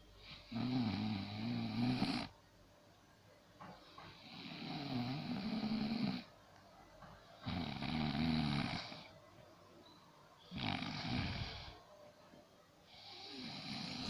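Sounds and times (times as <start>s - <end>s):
woman snoring loudly: 0.5s - 2.3s, 4.1s - 6.3s, 7.5s - 9.1s, 10.5s - 11.8s, 13.0s - 14.0s.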